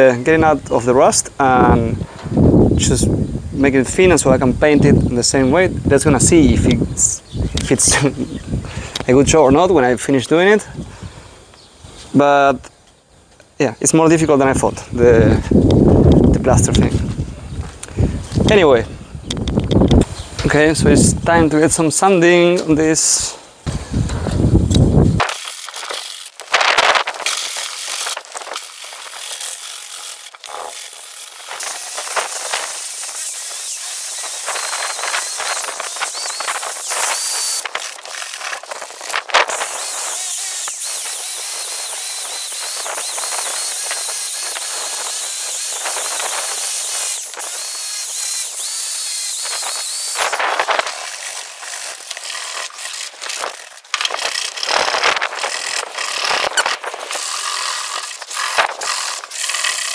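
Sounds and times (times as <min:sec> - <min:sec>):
electric sander grinding metal: 0:23.7 - 0:59.9.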